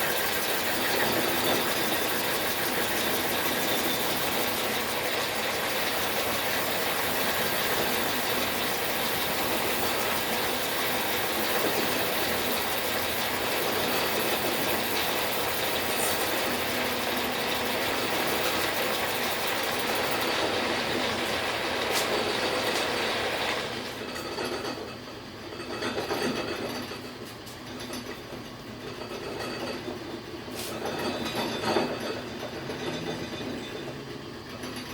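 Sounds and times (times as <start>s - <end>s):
metal lathe running: 0.0s - 24.2s.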